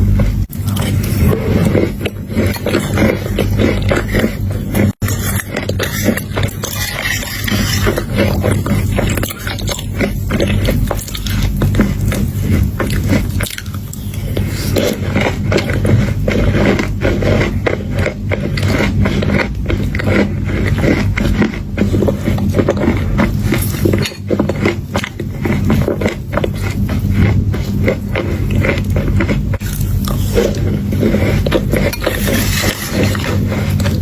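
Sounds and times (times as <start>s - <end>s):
chewing crunchy chocolate: 0.0s - 34.0s.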